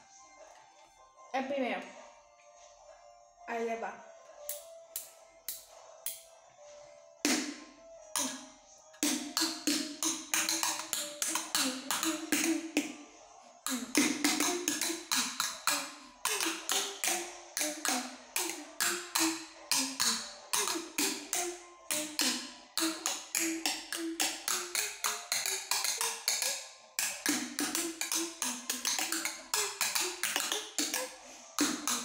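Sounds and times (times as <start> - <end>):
sticks drumming on water jugs: 8.2 - 8.4, 9.0 - 12.9, 13.7 - 32.0.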